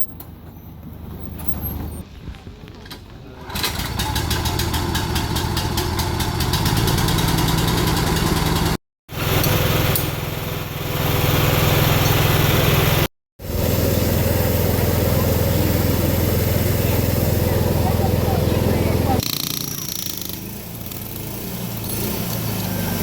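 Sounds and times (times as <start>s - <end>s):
small engine pulsing: 9.1s - 23.0s.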